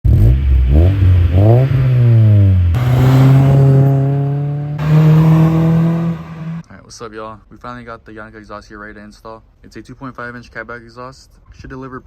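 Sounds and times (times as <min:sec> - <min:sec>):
car engine revving: 0:00.1 - 0:06.6.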